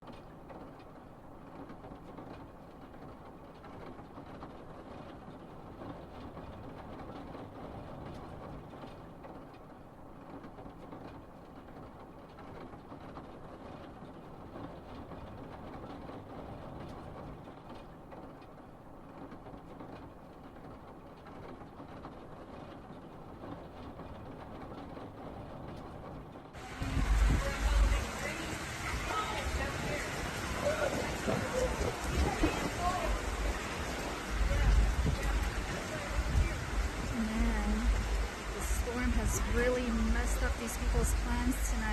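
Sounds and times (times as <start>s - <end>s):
road and tyre noise: 12.2s - 41.9s
rain hissing: 26.5s - 41.9s.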